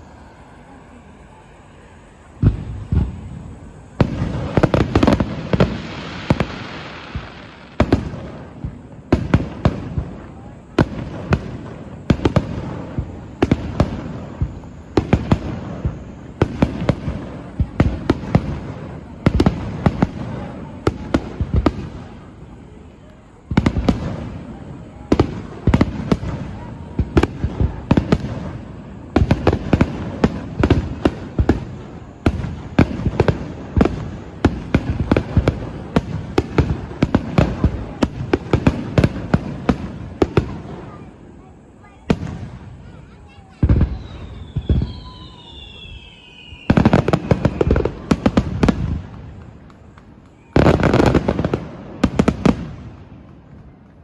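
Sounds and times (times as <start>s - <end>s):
fireworks bursting: 0.0s - 54.0s.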